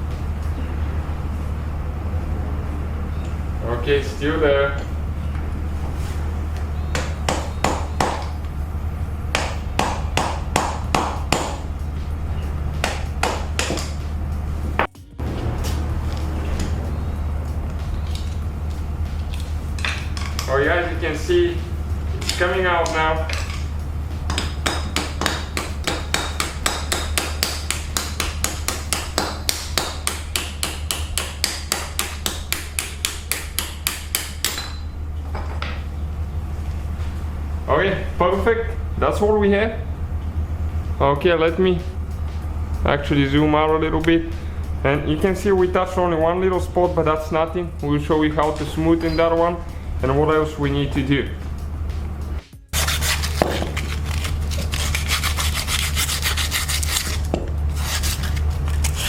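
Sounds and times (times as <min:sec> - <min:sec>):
steady low hum: 0:00.0 - 0:59.0
hammer blows on metal: 0:06.7 - 0:19.2
hammer striking steel: 0:06.8 - 0:08.6, 0:09.3 - 0:21.4, 0:22.0 - 0:35.9.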